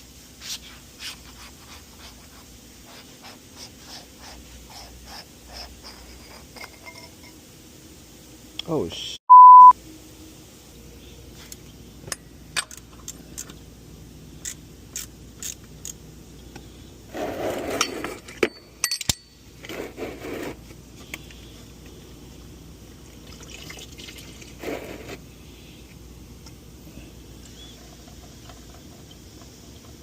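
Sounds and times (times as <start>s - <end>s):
metal tools clinking: 6.5s - 7.4s, 17.7s - 19.8s
oil pouring and splashing: 22.9s - 25.2s.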